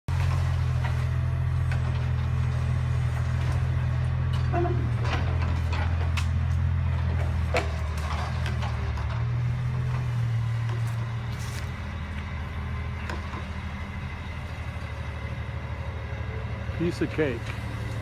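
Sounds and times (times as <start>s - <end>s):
engine idling: 0.1s - 18.0s.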